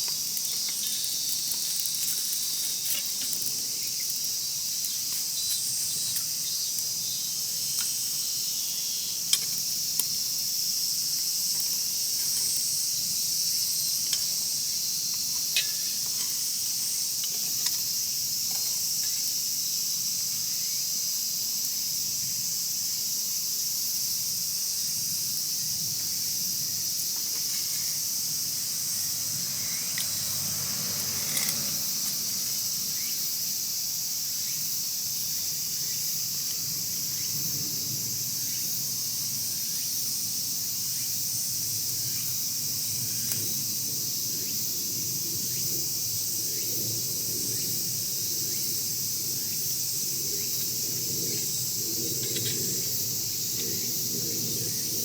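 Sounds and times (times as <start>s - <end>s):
burning wood popping: 0.0s - 6.9s
wood fire crackling: 0.0s - 8.2s
crickets and insects chirping: 0.0s - 55.0s.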